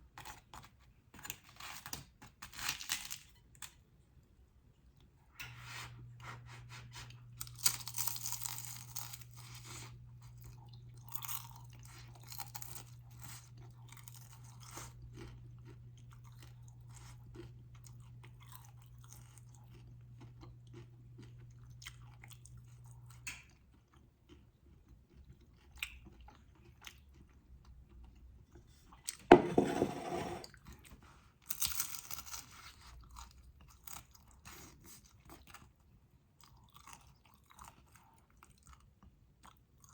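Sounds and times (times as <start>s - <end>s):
crunchy bites and chewing: 7.4s - 23.0s.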